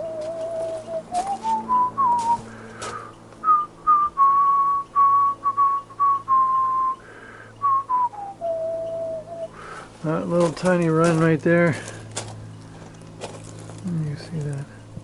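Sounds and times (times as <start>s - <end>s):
person whistling a tune: 0.0s - 2.5s, 3.4s - 7.0s, 7.6s - 9.6s.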